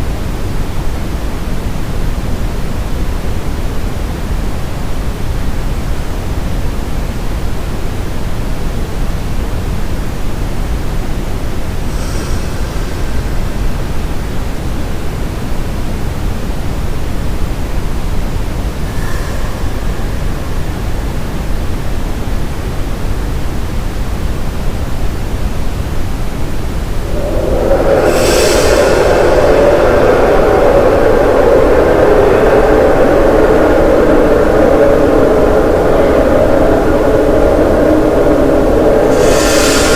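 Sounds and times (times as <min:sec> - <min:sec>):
brown noise: 0:10.8 - 0:15.6, 0:17.5 - 0:23.6, 0:25.4 - 0:39.9.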